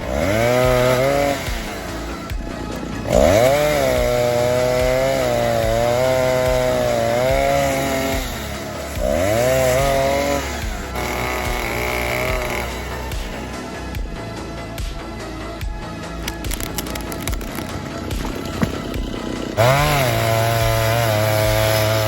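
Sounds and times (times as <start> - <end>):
chainsaw revving: 0.0 - 13.5, 16.2 - 22.0.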